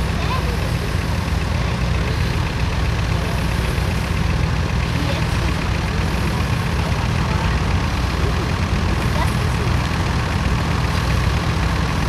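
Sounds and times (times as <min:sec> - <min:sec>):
tractor engine running: 0:00.0 - 0:12.0.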